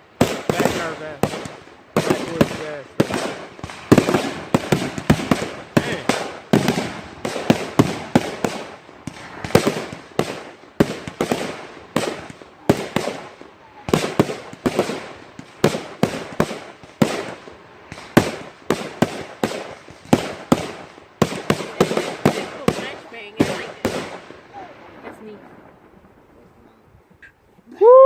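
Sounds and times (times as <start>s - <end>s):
fireworks bangs with crackle: 0.0s - 27.2s.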